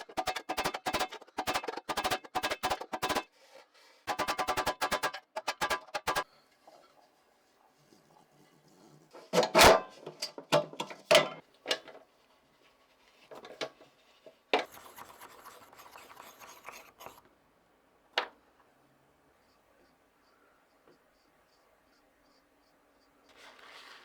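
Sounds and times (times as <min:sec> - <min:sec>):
sharp knocks and clatter: 0:00.0 - 0:03.3, 0:04.1 - 0:06.2
scraping or rubbing: 0:00.0 - 0:06.2, 0:14.6 - 0:17.2, 0:23.3 - 0:24.0.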